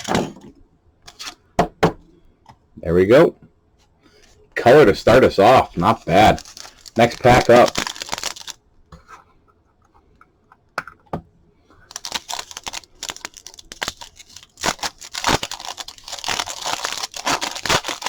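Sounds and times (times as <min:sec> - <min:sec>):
wrapper crinkling and tearing: 0:04.6 - 0:08.6, 0:11.9 - 0:18.0.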